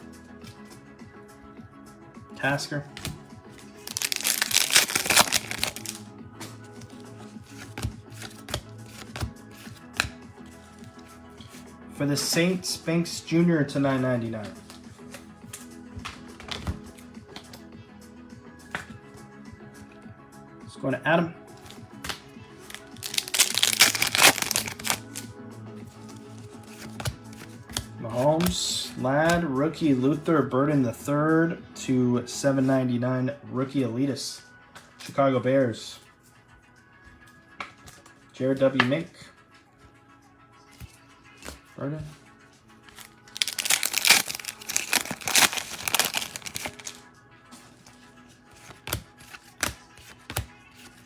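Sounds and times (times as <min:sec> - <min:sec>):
background music: 0:00.0 - 0:51.0
foil wrapper tearing and crinkling: 0:03.8 - 0:06.0, 0:22.7 - 0:25.2, 0:43.0 - 0:47.0.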